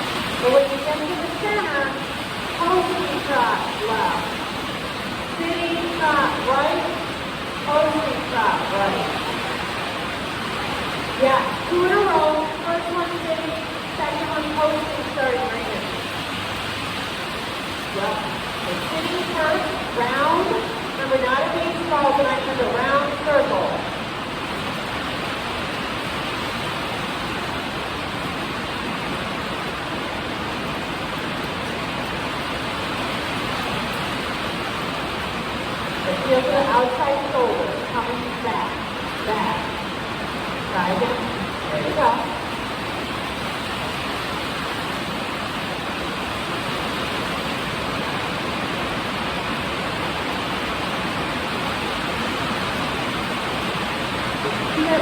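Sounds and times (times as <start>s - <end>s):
steady rain: 0.0s - 55.0s.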